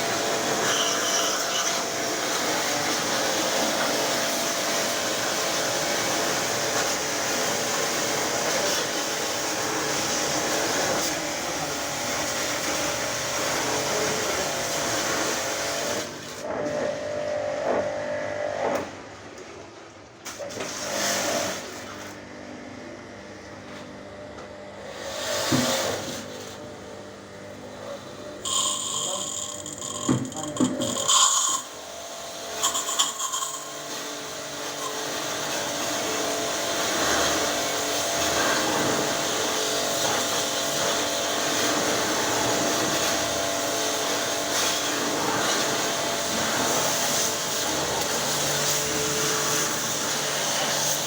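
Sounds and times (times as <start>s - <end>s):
pressure washer pump running: 0.0s - 18.6s, 20.4s - 51.0s
water spraying: 32.6s - 51.0s.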